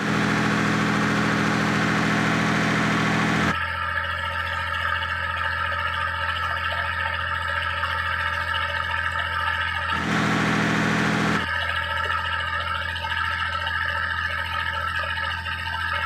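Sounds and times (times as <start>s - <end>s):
marine diesel engine running: 0.0s - 3.6s, 9.9s - 11.6s.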